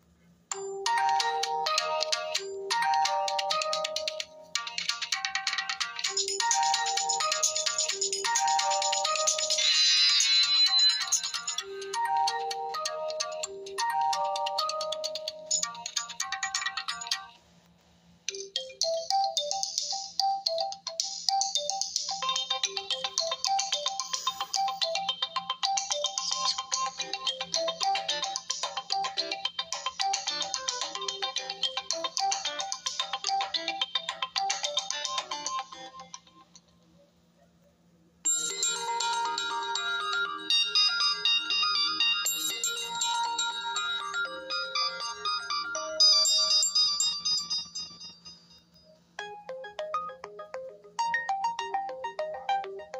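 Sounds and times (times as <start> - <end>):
electronic ringtone melody: 0.5 - 17.3, 18.3 - 36.1, 38.3 - 52.9
ringtone of short high notes: 6.0 - 17.1, 18.4 - 33.5, 38.3 - 52.8.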